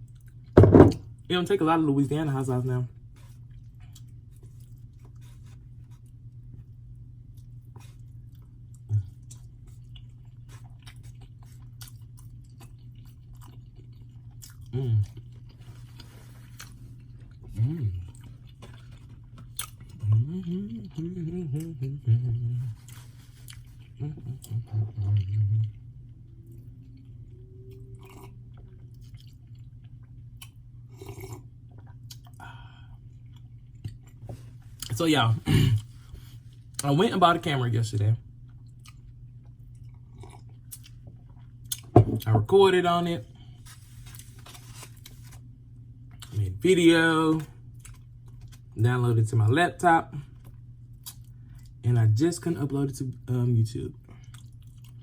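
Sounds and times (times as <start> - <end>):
steady low hum: 0.0 - 55.0
low thump: 0.6 - 1.0
close-miked chewing: 3.0 - 34.2, 38.4 - 41.9, 47.8 - 48.7, 54.0 - 55.0.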